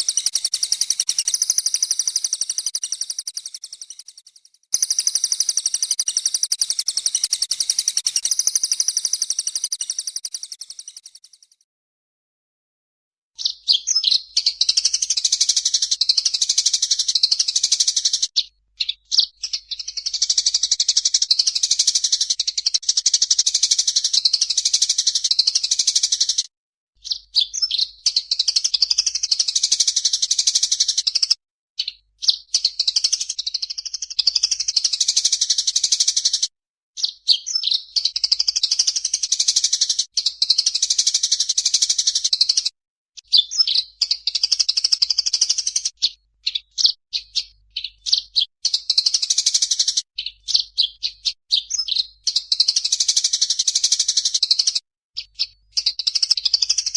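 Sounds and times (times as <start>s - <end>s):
songbird trilling: 0.0s - 3.9s, 4.8s - 10.9s, 13.4s - 21.2s
bird chattering song: 0.0s - 11.4s, 13.4s - 26.4s, 27.0s - 36.4s, 37.0s - 56.9s.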